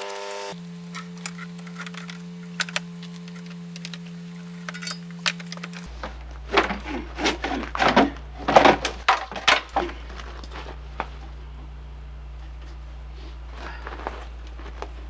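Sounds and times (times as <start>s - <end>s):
steady low hum: 0.3s - 15.0s
knocks and clatter: 0.8s - 5.9s, 7.8s - 10.6s.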